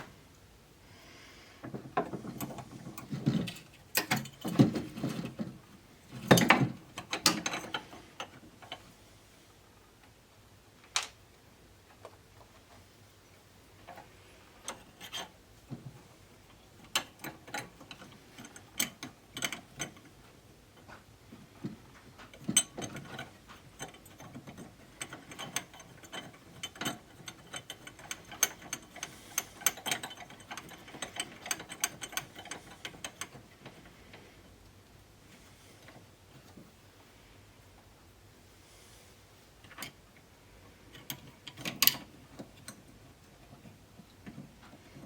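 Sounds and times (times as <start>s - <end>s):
clicks of hand tools and metal parts: 1.6s - 8.9s, 13.8s - 34.3s, 39.6s - 40.0s, 40.9s - 45.0s.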